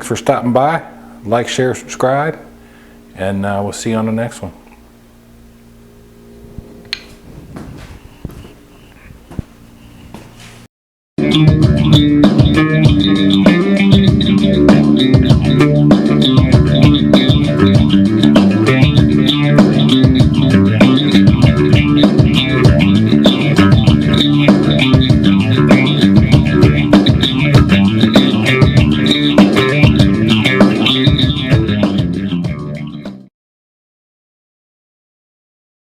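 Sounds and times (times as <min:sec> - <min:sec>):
music with bass guitar and beat: 0:11.2 - 0:33.3.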